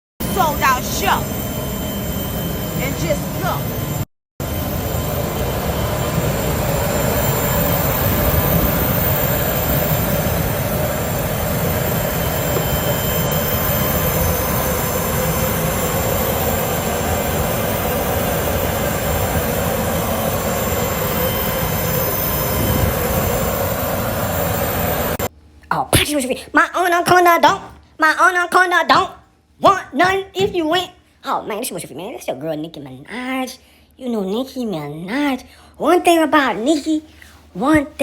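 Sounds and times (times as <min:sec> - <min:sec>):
jet engine cabin noise: 0:00.2 - 0:25.3.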